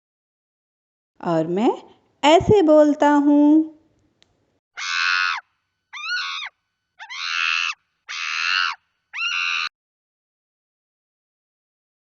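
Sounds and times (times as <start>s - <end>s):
chimpanzee screaming: 4.8s - 9.7s.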